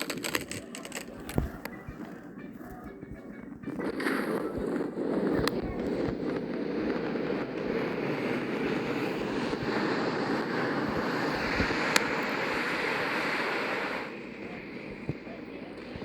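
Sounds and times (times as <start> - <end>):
roaring rush of noise: 0.0 - 16.0.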